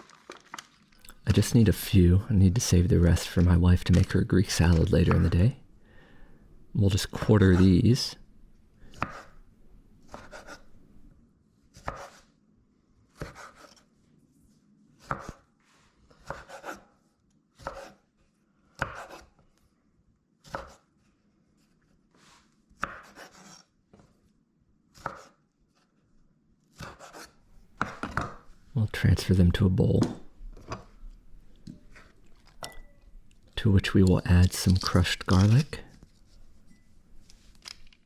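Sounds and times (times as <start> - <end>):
knife cutting tomatoes on board: 8.9 - 9.4, 10.0 - 10.8, 11.7 - 12.3, 13.1 - 13.9, 15.0 - 15.5, 16.2 - 18.0, 18.7 - 19.4, 20.4 - 21.0, 22.8 - 23.7, 24.9 - 25.4, 26.7 - 28.4.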